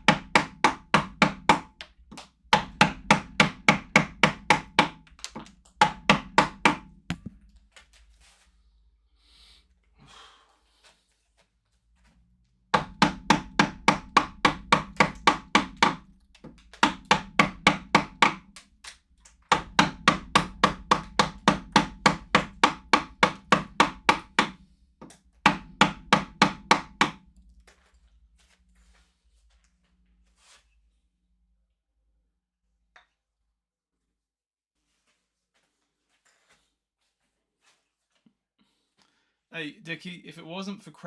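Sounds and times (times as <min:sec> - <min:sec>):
chisel struck into hard wood: 0:05.8 - 0:07.4, 0:12.8 - 0:16.1, 0:16.8 - 0:18.4, 0:19.5 - 0:24.6.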